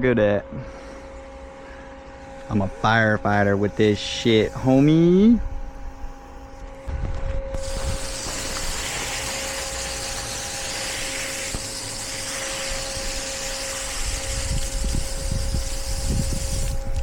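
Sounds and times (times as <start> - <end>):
wind buffeting microphone: 6.9 - 8.9, 12.6 - 17.0
water spraying from hose nozzle: 7.6 - 17.0.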